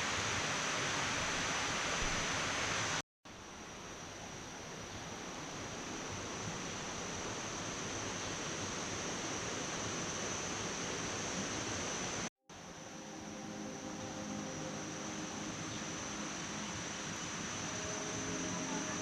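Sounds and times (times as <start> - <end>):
waterfall rushing: 11.9 - 19.0.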